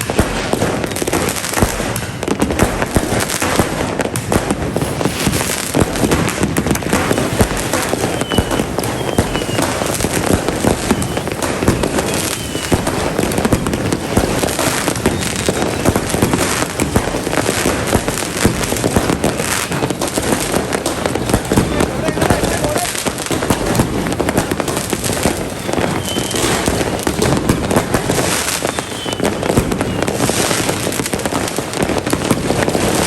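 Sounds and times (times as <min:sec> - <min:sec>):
fireworks crackling and banging: 0:00.0 - 0:33.0.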